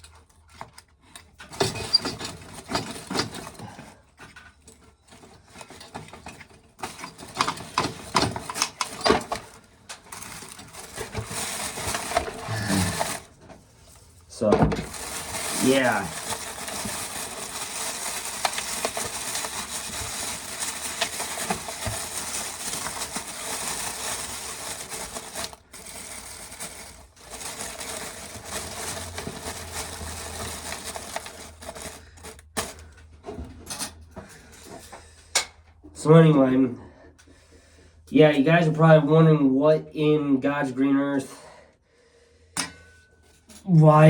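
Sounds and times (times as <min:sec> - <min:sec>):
corn sheller rattling: 0:05.5 - 0:13.3, 0:14.3 - 0:32.9.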